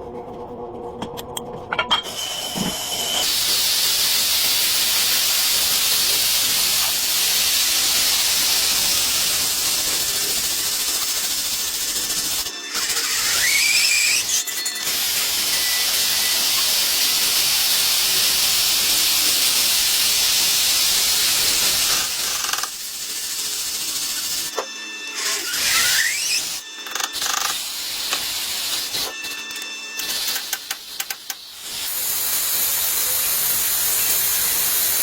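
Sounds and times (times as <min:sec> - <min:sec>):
loud hissing: 0:03.0 - 0:14.3, 0:25.2 - 0:29.1, 0:30.0 - 0:35.0.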